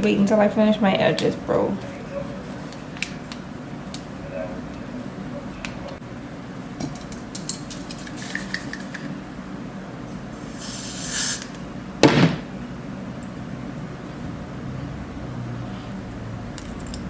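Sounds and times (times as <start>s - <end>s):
short hiss: 10.5s - 11.5s
loud knock: 12.0s - 12.5s.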